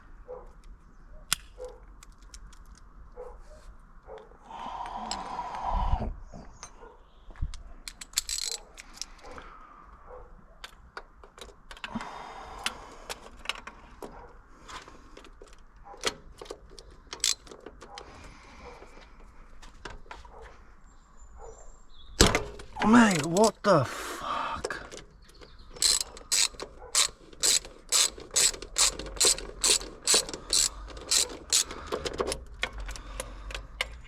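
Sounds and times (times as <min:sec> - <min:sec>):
metal tools clinking: 0:07.9 - 0:09.2, 0:25.3 - 0:32.3.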